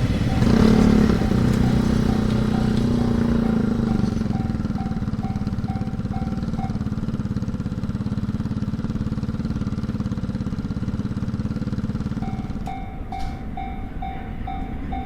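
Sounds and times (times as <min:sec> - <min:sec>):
level crossing warning bell: 0:00.0 - 0:07.6, 0:11.8 - 0:15.0
engine running with rapid throb: 0:00.0 - 0:13.0.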